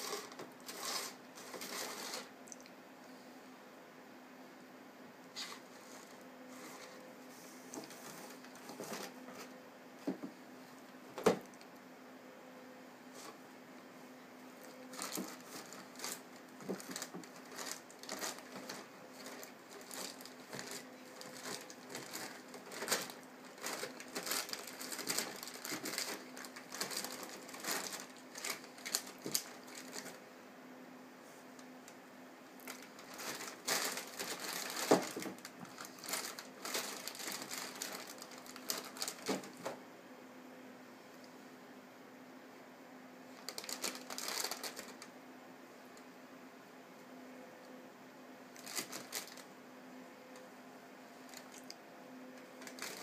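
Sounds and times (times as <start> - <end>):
plastic bag crinkling: 0.0 - 2.3, 14.6 - 30.2, 32.6 - 39.7, 43.3 - 45.1, 48.6 - 49.5, 51.3 - 51.8, 52.5 - 53.0.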